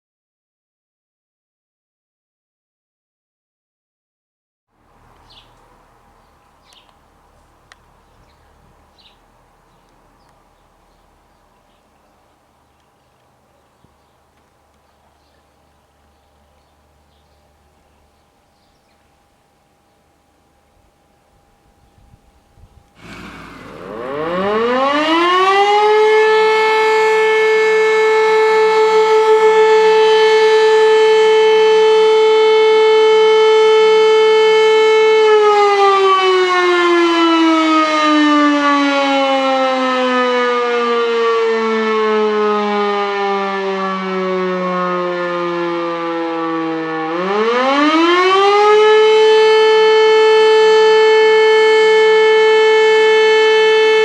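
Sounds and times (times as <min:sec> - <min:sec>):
motor siren winding up and down: 0:23.0 - 0:35.8.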